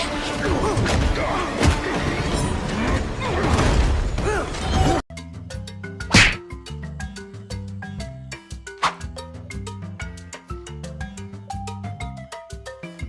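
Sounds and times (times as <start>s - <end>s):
music with held notes: 5.1s - 13.0s.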